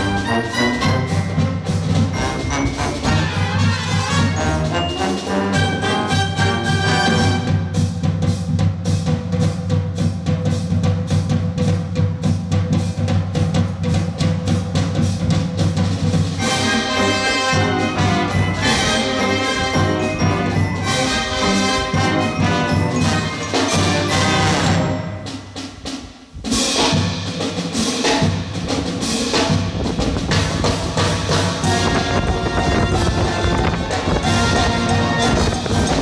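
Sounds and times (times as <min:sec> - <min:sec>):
brass playing: 0:00.0 - 0:07.9, 0:16.4 - 0:25.6, 0:30.2 - 0:36.0
drums beating: 0:00.0 - 0:36.0
wind rumble on microphone: 0:29.7 - 0:31.0, 0:31.6 - 0:36.0.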